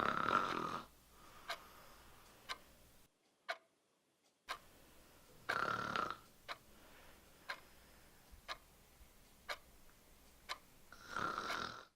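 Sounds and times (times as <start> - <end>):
person snoring: 0.0 - 0.9, 5.5 - 6.2, 10.9 - 11.9
clock ticking: 0.0 - 11.8.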